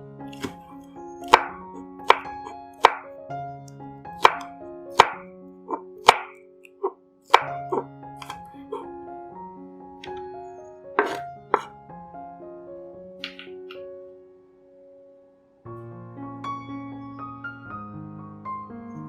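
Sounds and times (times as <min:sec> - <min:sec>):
background music with held notes: 0:00.0 - 0:19.0
knife chopping on cutting board: 0:00.3 - 0:03.0, 0:04.2 - 0:08.4, 0:11.0 - 0:11.7.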